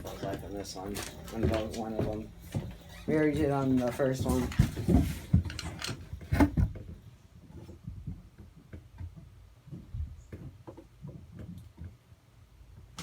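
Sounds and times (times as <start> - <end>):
ceiling fan humming: 0.0 - 8.4.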